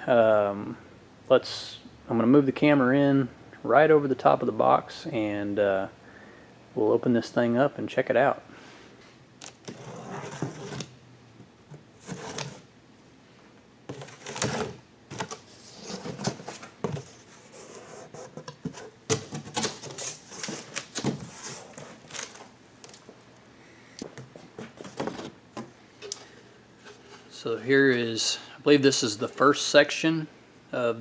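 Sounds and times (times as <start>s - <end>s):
cardboard box rubbing and scraping: 9.7s - 10.9s
clicks and knocks of packaging: 13.9s - 17.2s, 18.4s - 23.1s.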